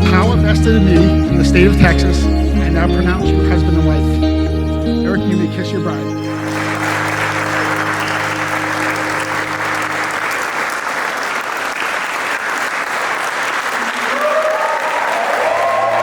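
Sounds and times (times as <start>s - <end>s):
held low music notes: 0.0s - 10.8s
music with sliding melody: 0.0s - 10.8s
crowd applauding: 5.4s - 16.0s.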